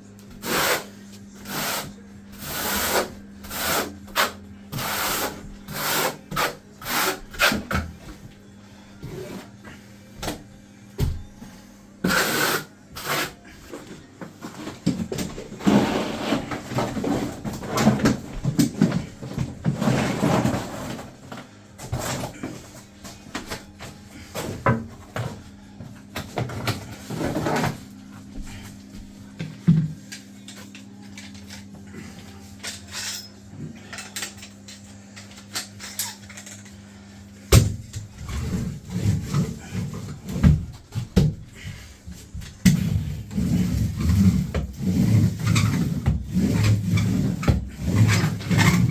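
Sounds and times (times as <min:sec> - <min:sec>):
steady low hum: 0:12.7 - 0:48.9.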